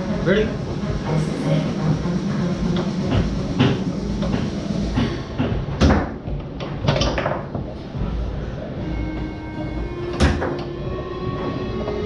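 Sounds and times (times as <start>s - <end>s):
foosball ball clacking: 3.1s - 7.8s, 10.2s - 10.8s
foosball rods rattling: 5.6s - 7.8s.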